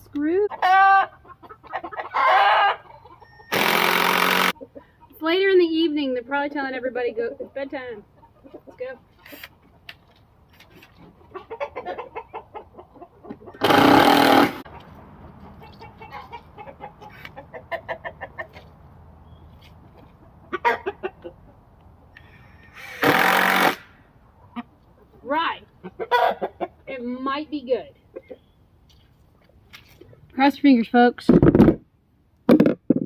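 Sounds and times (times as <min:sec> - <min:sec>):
chickens clucking: 0:00.4 - 0:03.6, 0:04.4 - 0:05.7, 0:07.0 - 0:23.0, 0:24.2 - 0:30.3
power drill driving screws: 0:03.5 - 0:04.5, 0:13.6 - 0:14.6, 0:22.8 - 0:23.9.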